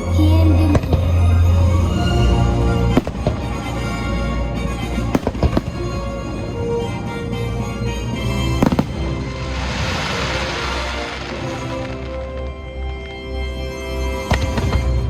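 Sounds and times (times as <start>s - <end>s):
music soundtrack: 0.0s - 15.0s
fireworks bangs: 2.9s - 4.2s, 5.0s - 6.2s, 8.5s - 12.9s, 14.3s - 15.0s.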